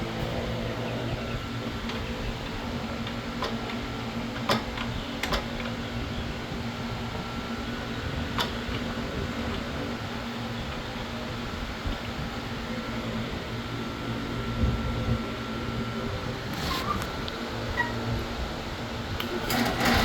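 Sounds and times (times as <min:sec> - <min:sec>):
drill press motor humming: 0:19.2 - 0:20.0.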